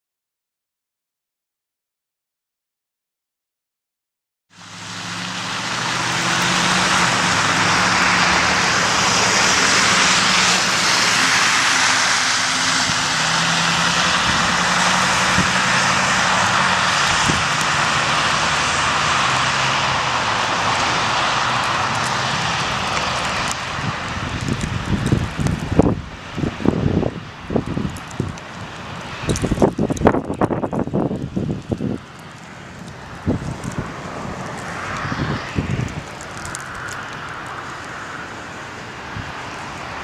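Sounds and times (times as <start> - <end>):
vehicle engine running: 4.6 - 17.7
loud rushing noise: 4.6 - 27.3.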